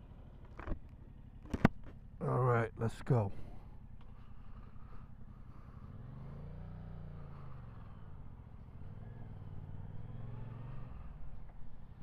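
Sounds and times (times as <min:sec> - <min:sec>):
motorcycle engine accelerating: 0:04.0 - 0:12.0.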